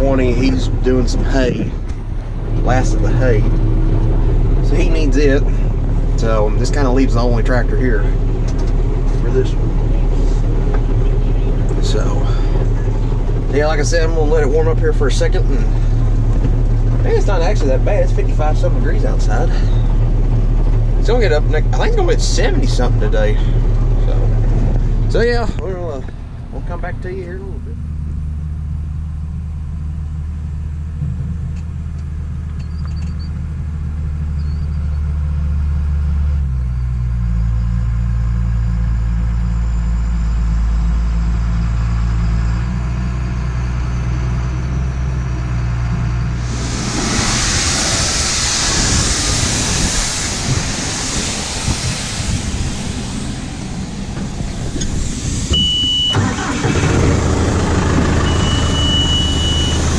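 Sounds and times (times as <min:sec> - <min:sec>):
loud rushing machinery noise: 0:00.0 - 0:26.4, 0:45.7 - 0:59.9
diesel engine idling: 0:00.0 - 0:59.9
short high beep: 0:55.5 - 0:56.3, 0:58.2 - 0:59.8.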